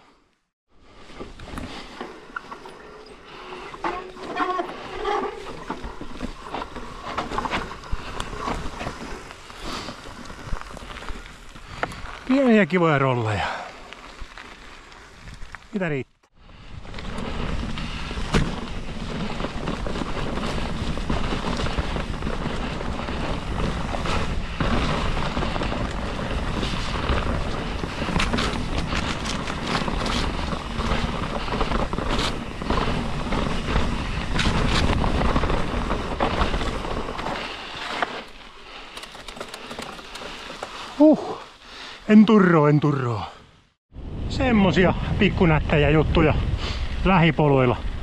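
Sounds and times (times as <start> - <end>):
bike tyres rumbling on trail: 0.7 - 48.0
bike rattling clicks and knocks: 1.4 - 12.2, 16.8 - 41.0.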